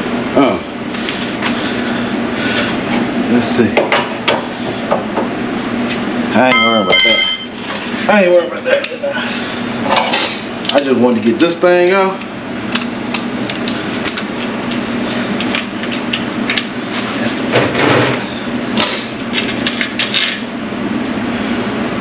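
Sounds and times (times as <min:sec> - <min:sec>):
steady low hum: 0:00.0 - 0:22.0
hand tools clinking on metal: 0:06.5 - 0:07.5.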